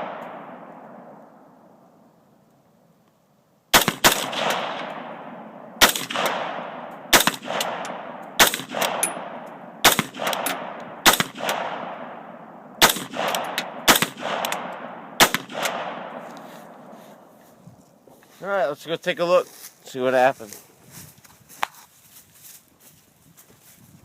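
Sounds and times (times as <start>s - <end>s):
rifle gunshots with echo: 0.0s - 1.9s, 3.7s - 17.3s.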